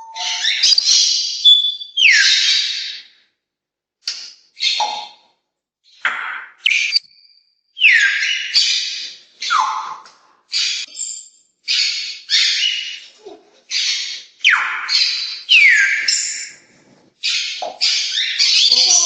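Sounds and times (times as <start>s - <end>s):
parrot harsh calls: 0.1s - 3.0s, 11.7s - 16.6s.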